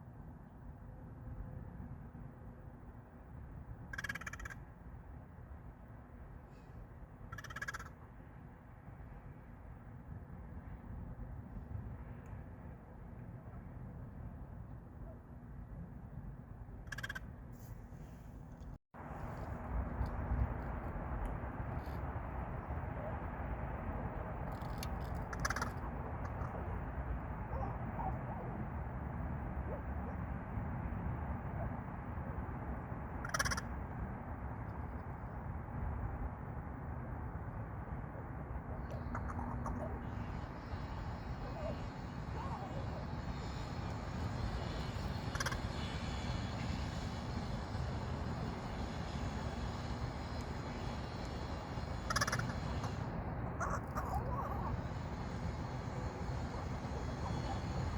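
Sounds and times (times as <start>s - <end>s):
low background rumble: 0.0s - 57.9s
faint crow calls: 3.8s - 4.7s, 7.2s - 8.1s, 16.8s - 17.3s, 24.4s - 26.7s, 33.2s - 33.8s, 38.9s - 43.6s, 45.1s - 45.9s, 52.0s - 55.0s
crow clicks: 3.9s - 4.6s, 7.3s - 8.0s, 16.8s - 17.3s, 24.4s - 26.6s, 33.2s - 33.8s, 38.9s - 39.9s, 45.3s - 45.8s, 52.1s - 53.0s.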